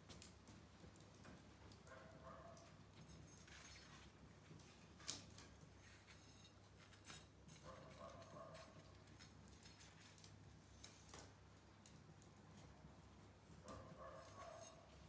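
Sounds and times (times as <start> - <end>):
wood fire crackling and popping: 0.0 - 1.9, 8.7 - 13.6.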